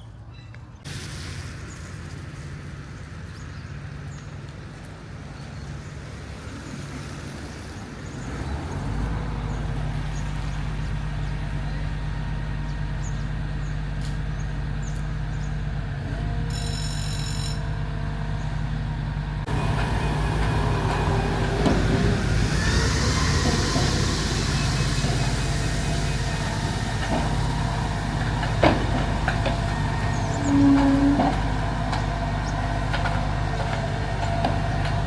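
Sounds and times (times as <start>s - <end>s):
vehicle engine running: 8.0s - 35.0s.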